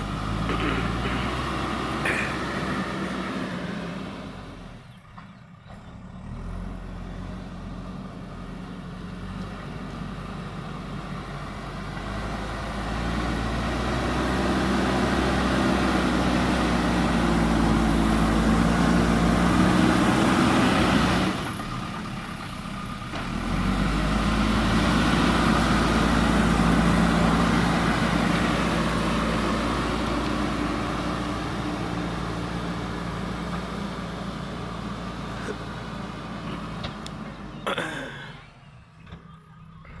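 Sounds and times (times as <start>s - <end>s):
backhoe diesel engine under load: 0.0s - 40.0s.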